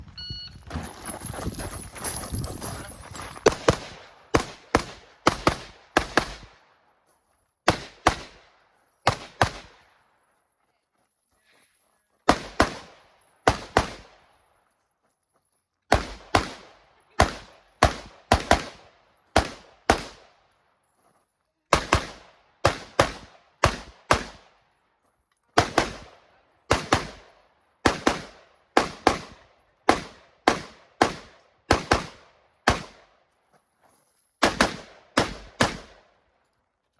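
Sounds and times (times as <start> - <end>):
rifle shots with echo: 3.4 - 6.7, 7.7 - 9.8, 12.3 - 14.3, 15.9 - 20.4, 21.7 - 24.6, 25.6 - 33.2, 34.4 - 36.1.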